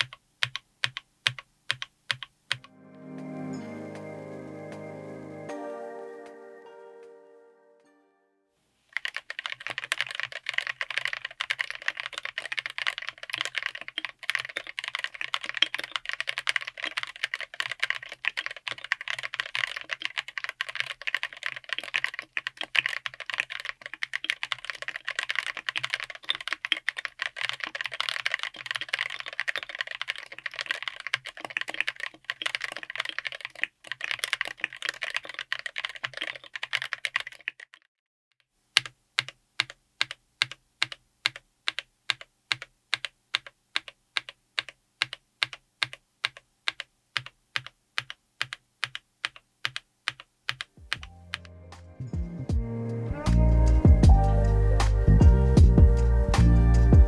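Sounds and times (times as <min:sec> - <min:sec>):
fast mechanical keyboard typing: 0:00.0 - 0:02.7, 0:08.9 - 0:37.9, 0:38.8 - 0:51.5.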